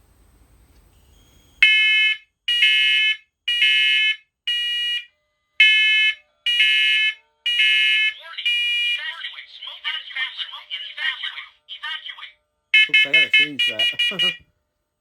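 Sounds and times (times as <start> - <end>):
high-pitched alarm beeps: 12.8 - 14.4.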